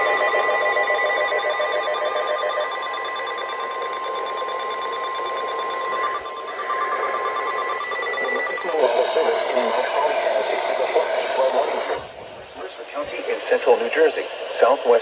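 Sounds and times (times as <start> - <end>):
steady single alarm tone: 0.0 - 9.8
radio static: 6.5 - 15.0.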